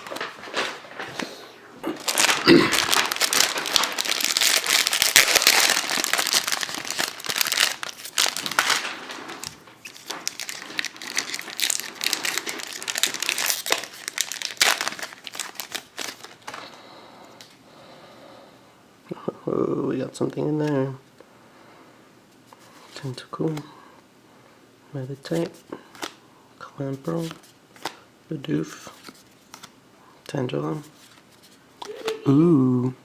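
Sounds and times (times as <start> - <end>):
foil wrapper tearing and crinkling: 2.0 - 16.7.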